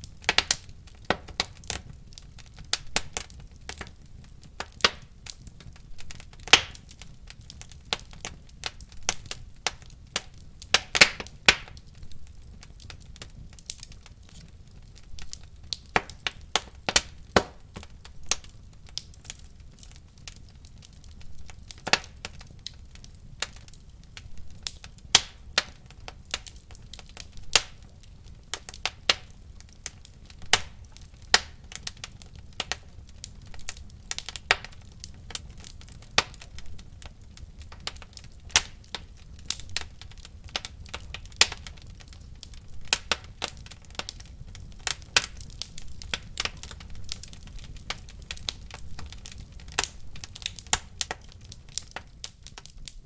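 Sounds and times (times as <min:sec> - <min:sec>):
low rumble of flames: 0:00.0 - 0:53.0
wood fire crackling and popping: 0:00.0 - 0:53.0.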